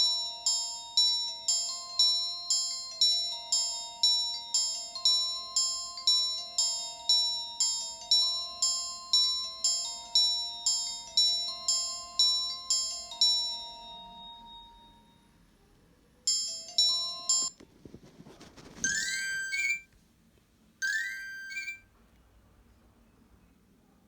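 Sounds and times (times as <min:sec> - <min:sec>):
mobile phone ringtone melodies: 0:00.0 - 0:15.4, 0:16.3 - 0:17.5, 0:18.8 - 0:19.9, 0:20.8 - 0:21.8.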